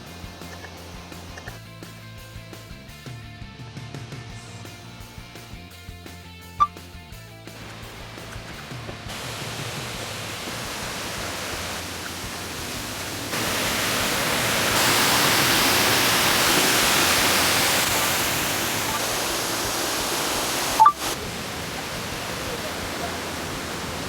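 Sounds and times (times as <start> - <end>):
waterfall rushing: 7.6 - 24.0.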